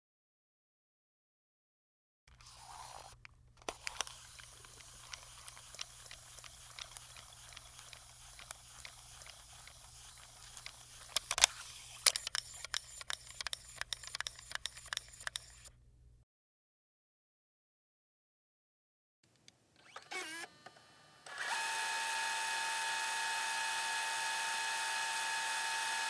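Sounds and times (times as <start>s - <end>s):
camcorder clicks: 3.6s - 15.6s.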